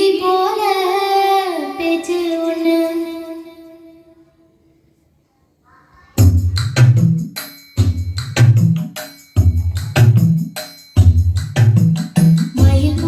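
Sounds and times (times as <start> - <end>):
hand percussion: 6.2 - 13.0.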